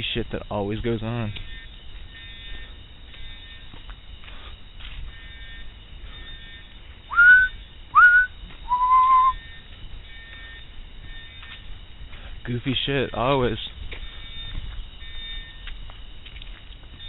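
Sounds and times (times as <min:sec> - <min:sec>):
person whistling: 0:07.1 - 0:09.4.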